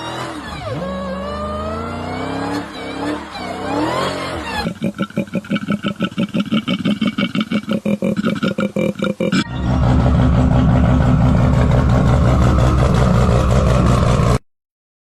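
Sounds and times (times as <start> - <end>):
revving engine-like sound: 0.0 - 6.2, 9.4 - 14.4
rapid pulsing: 9.1 - 14.4.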